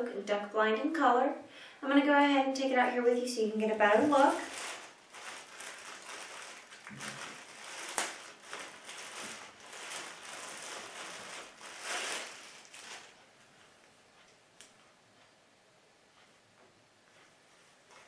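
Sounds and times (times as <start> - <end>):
packaging and fabric rustling: 3.5 - 13.2.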